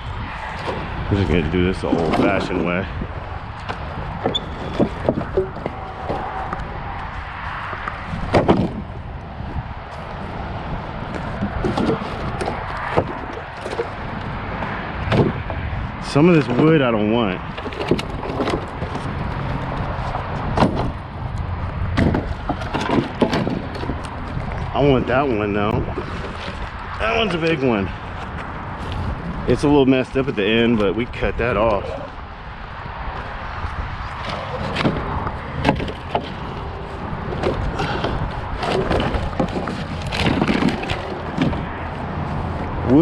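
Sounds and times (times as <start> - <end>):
steady low rumble: 0.0 - 4.2
lumber knocking and clattering: 3.6 - 6.6, 7.7 - 8.9, 11.1 - 15.7, 21.9 - 25.2, 34.2 - 41.8.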